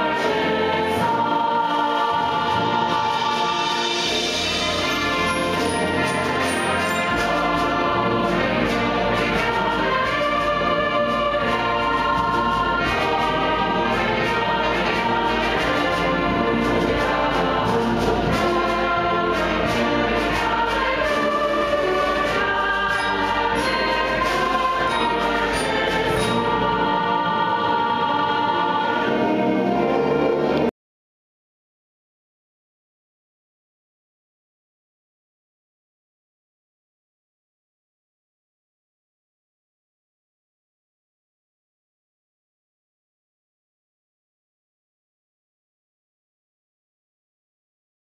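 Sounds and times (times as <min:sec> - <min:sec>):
choir singing with orchestra: 0:00.0 - 0:30.7.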